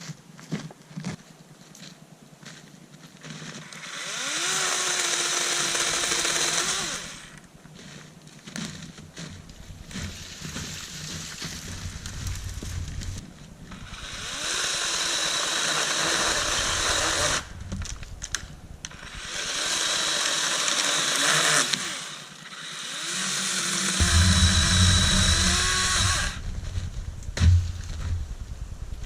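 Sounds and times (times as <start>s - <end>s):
battery chainsaw whining: 3.6s - 7.4s, 13.7s - 26.5s
thump: 24.0s - 28.3s.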